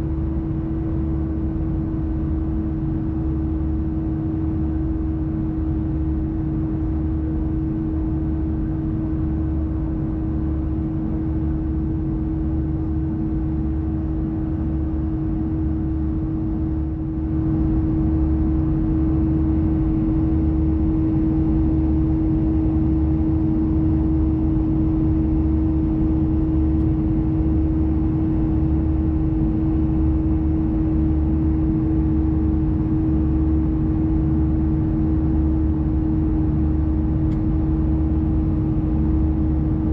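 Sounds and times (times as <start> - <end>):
aircraft engine howl: 0.0 - 39.9
low cabin rumble: 0.0 - 39.9.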